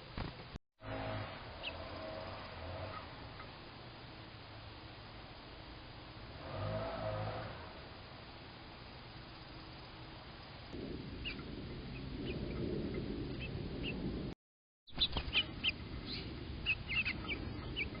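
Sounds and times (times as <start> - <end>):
low background noise: 0.0 - 11.6
small birds chirping: 1.6 - 3.6, 14.9 - 18.0.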